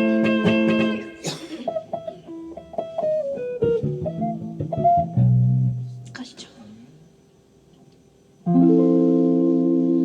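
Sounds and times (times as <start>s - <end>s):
guitar chord strummed: 0.0s - 5.8s
picked guitar notes: 0.0s - 6.1s, 8.4s - 10.0s.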